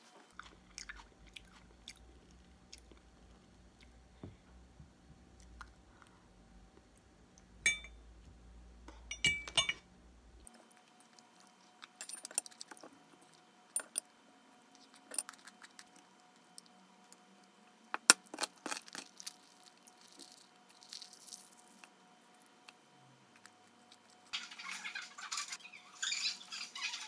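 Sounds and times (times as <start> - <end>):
household objects clicking and clinking: 11.8 - 12.9, 13.8 - 14.1.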